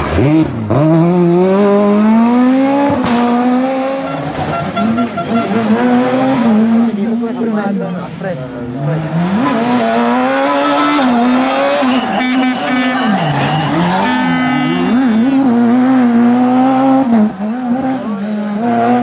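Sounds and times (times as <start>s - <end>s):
rally car engine revving: 0.0s - 19.0s
high squeal: 10.6s - 15.9s.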